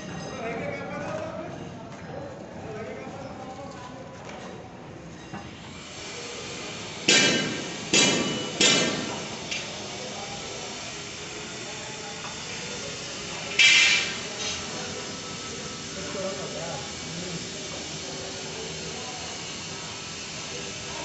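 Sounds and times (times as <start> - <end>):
hammer striking hard material: 7.1 - 9.7.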